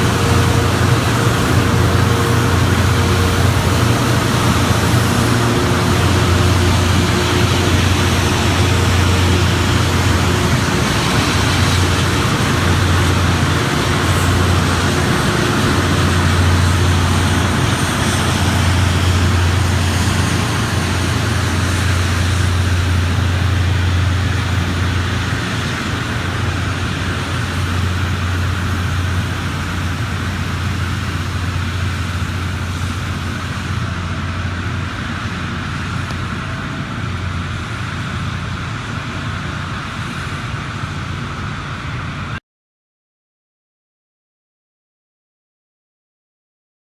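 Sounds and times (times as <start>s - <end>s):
deep diesel engine drone: 0.0s - 42.4s
rail grinder stones hissing: 0.0s - 42.4s.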